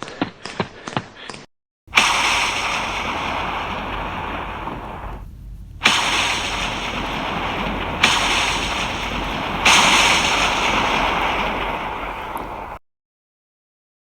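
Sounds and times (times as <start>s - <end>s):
rushing rain noise: 1.9s - 12.8s
thunder cracks and rumbling: 1.9s - 12.8s.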